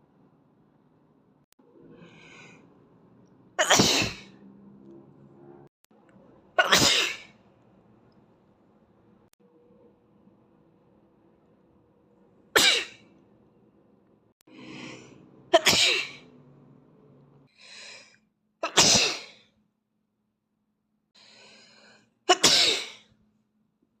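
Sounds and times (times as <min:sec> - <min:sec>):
boy sneezing: 0:18.7 - 0:19.4
intake of breath: 0:21.2 - 0:22.2.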